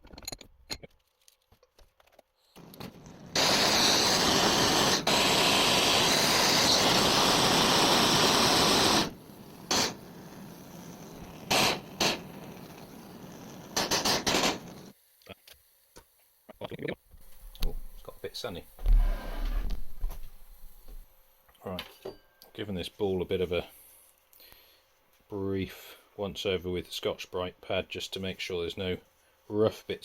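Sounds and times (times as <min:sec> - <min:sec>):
blowtorch flame hissing: 0:02.6 - 0:15.0, 0:17.1 - 0:21.0.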